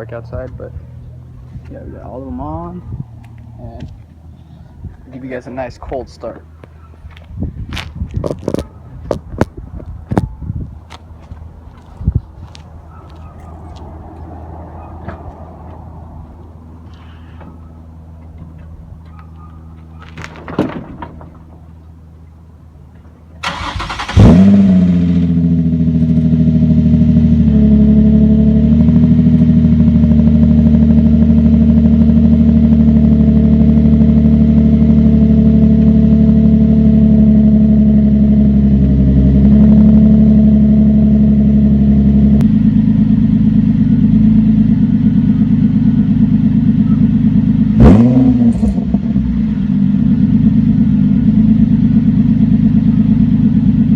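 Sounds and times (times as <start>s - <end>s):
car engine idling: 0.0s - 7.2s, 11.0s - 53.9s
engine rev blip: 23.4s - 26.6s, 42.4s - 50.3s.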